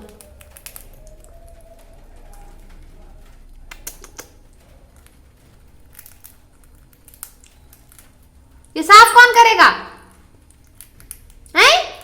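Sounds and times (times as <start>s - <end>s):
parrot crunching papad with beak: 3.6s - 8.2s.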